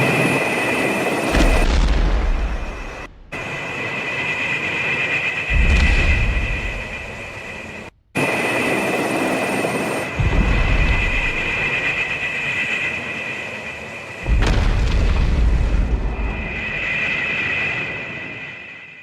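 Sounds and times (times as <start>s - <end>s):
heavy booms: 1.3s - 3.5s, 5.5s - 7.2s, 14.3s - 16.7s.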